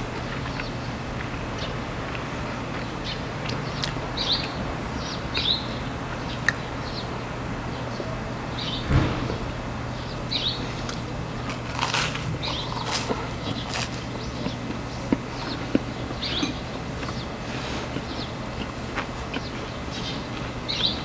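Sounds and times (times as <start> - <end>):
steady low hum: 0.0 - 21.0
small birds chirping: 0.2 - 9.2, 9.9 - 21.0
short thump: 8.8 - 9.5.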